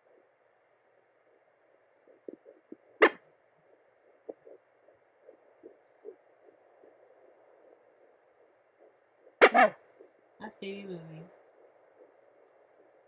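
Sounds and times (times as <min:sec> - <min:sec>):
fast fetal heartbeat: 0:00.0 - 0:13.0
static hiss: 0:00.0 - 0:13.0
soft bumps: 0:01.2 - 0:10.4.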